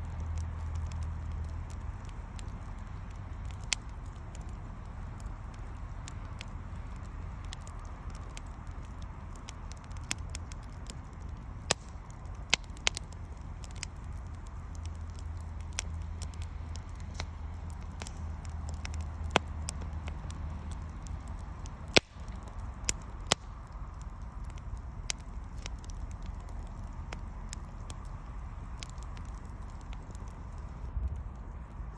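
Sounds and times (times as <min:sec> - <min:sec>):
low rush of flame: 0:00.0 - 0:31.9
wood fire crackling and popping: 0:00.0 - 0:31.9.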